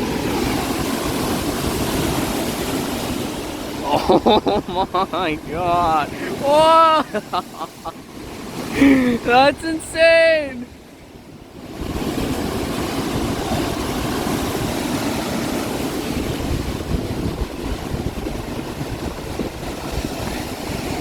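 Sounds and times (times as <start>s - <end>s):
waves surging on lake: 0.0s - 21.0s
wind buffeting microphone: 11.6s - 21.0s.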